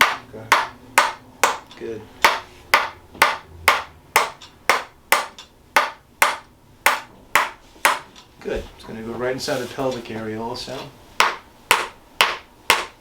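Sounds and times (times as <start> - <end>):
sharp tapping on lower back: 0.0 - 8.2, 11.2 - 13.0.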